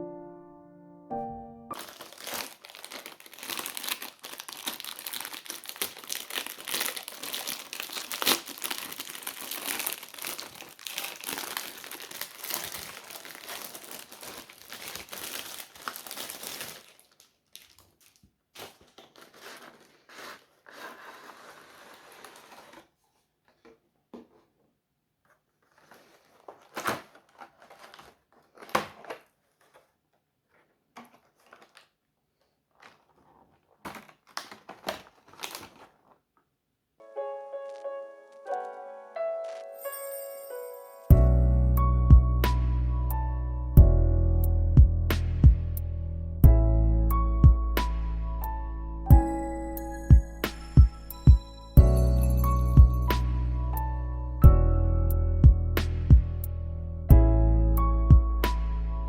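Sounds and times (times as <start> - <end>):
packaging crinkling: 1.7 - 24.5, 25.2 - 36.5, 37.6 - 40.6.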